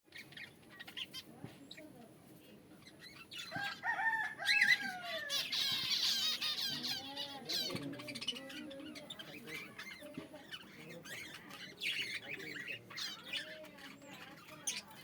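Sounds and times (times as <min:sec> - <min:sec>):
small birds chirping: 0:00.0 - 0:15.0
rooster crowing: 0:03.5 - 0:05.5.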